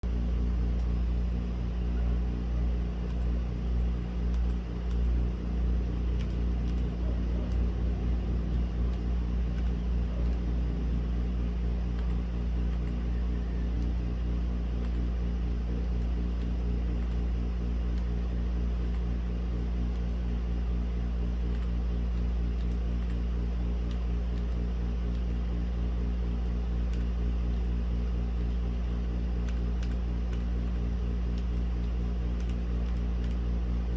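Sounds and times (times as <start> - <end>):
low neighbourhood rumble: 0.6 - 15.0.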